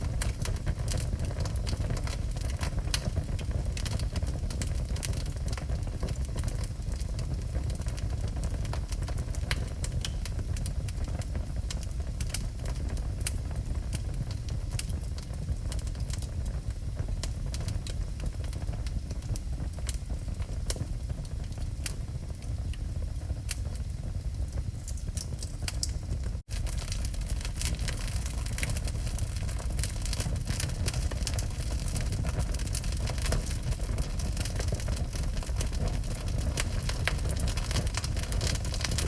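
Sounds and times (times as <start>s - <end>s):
fire rumbling: 0.0s - 39.0s
logs crackling and popping: 0.1s - 39.0s.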